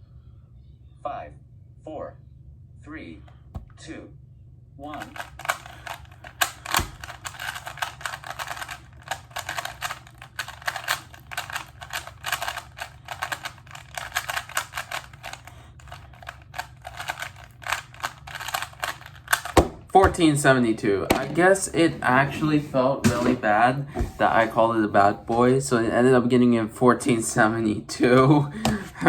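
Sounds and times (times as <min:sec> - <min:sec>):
puzzle cube plastic clicks: 0:04.9 - 0:19.8.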